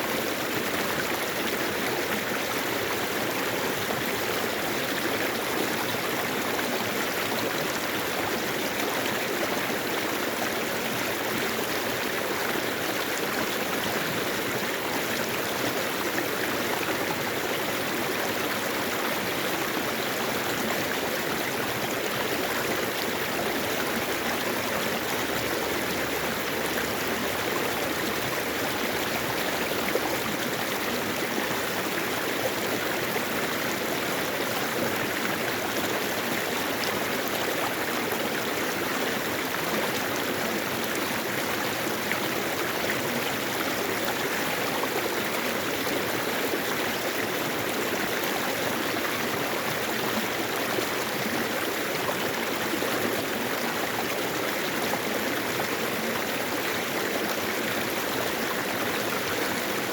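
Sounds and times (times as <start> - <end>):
stream flowing over rocks: 0.0 - 59.9.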